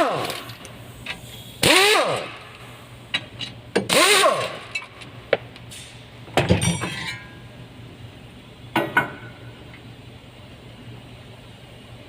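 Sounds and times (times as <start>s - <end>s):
metal tools clinking and clanking: 6.4s - 7.4s.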